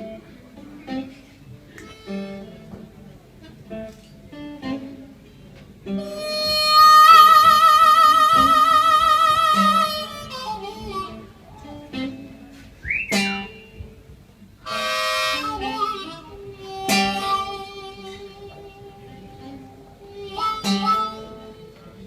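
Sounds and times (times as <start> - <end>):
acoustic guitar notes: 0.0 - 22.0
harmonica with vibrato: 5.9 - 13.8, 14.6 - 22.0.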